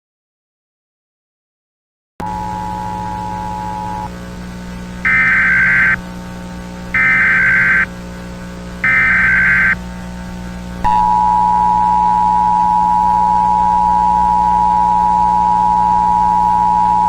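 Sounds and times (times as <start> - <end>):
steady low hum: 2.2 - 17.0
digital data tone bursts: 5.1 - 6.0, 7.0 - 7.9, 8.8 - 9.8.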